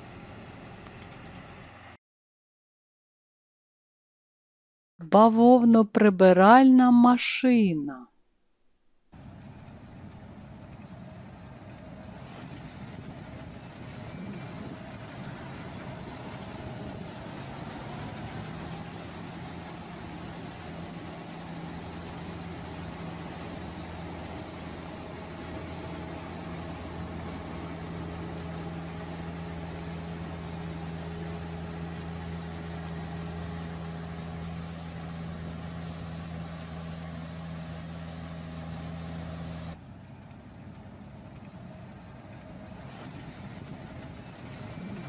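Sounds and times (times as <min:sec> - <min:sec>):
engine humming deeply: 0:09.2 - 0:45.0
quiet machine noise: 0:09.2 - 0:45.0.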